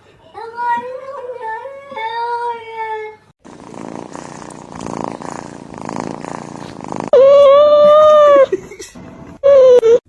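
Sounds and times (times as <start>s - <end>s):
cat purring: 3.4s - 7.4s
cat meowing: 7.1s - 8.5s.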